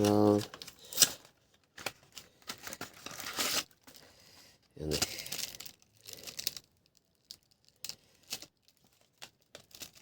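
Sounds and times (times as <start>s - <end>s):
packaging crinkle: 4.8s - 10.0s.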